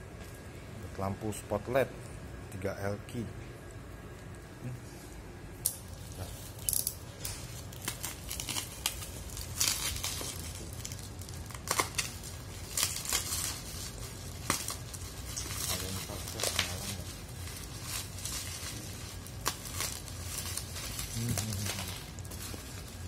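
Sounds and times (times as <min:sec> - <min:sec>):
packaging tearing: 0:05.9 - 0:23.0
plastic and cardboard crinkling: 0:05.9 - 0:23.0.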